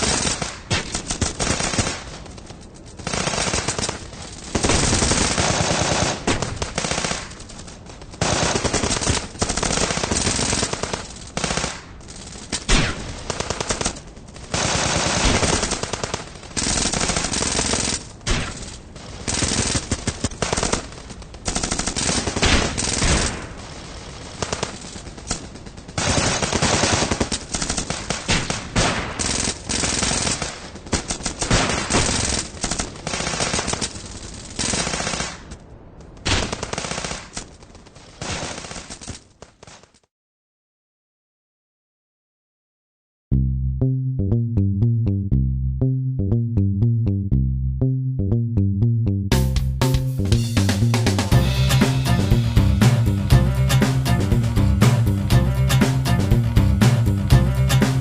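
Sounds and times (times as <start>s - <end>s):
automatic weapons firing: 0.0s - 23.6s, 24.2s - 35.5s.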